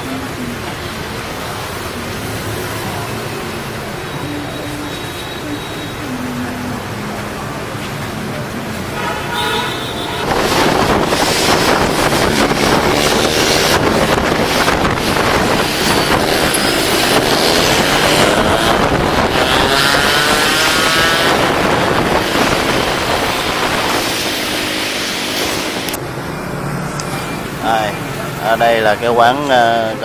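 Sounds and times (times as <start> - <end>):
busy street traffic: 0.0 - 30.0
wind buffeting microphone: 10.2 - 26.0
passing engine pitch sweep: 10.2 - 27.6.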